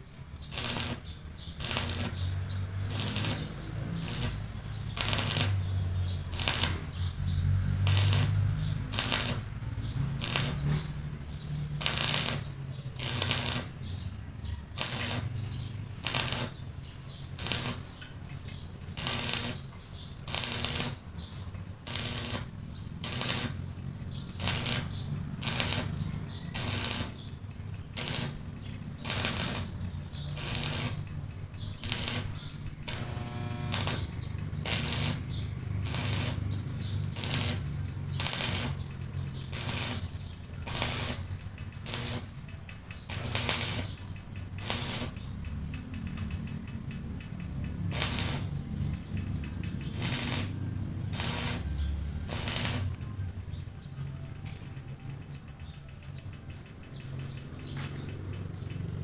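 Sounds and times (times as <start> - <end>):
hand tool scraping metal: 31.8 - 35.3.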